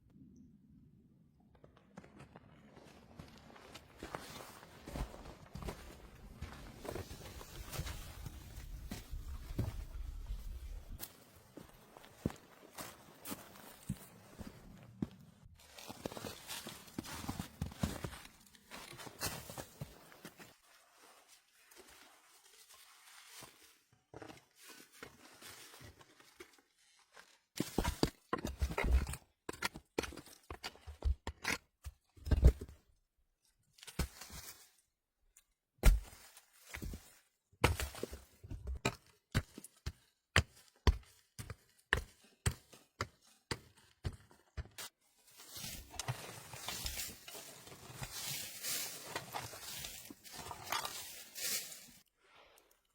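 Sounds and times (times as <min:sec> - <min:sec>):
footsteps crunching in snow: 0:45.3 - 0:52.0.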